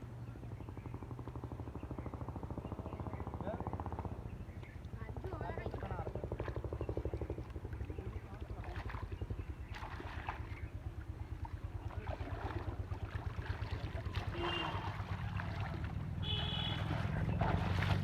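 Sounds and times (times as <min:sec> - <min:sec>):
water splashes: 0:04.8 - 0:18.0.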